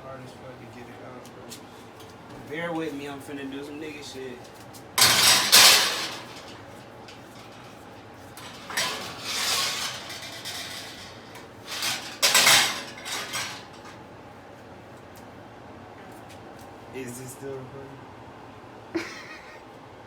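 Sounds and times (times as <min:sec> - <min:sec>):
metal kitchenware scraping and clattering: 0:05.0 - 0:14.0.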